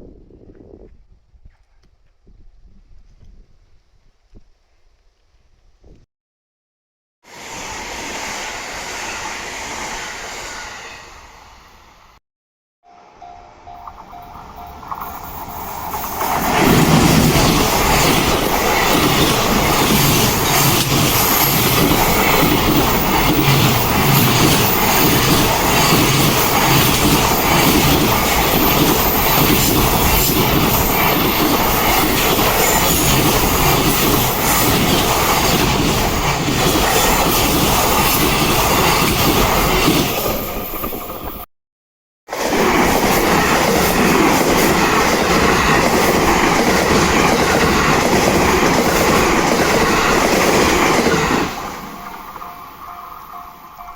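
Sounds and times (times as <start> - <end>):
train wheels clattering on rails: 13.7 - 41.4, 42.5 - 53.9.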